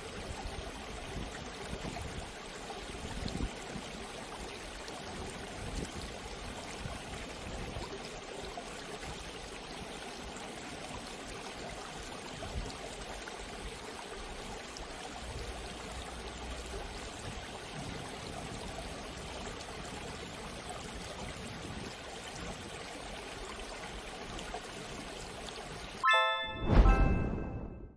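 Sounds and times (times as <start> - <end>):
ringing timer tone: 26.0 - 27.8.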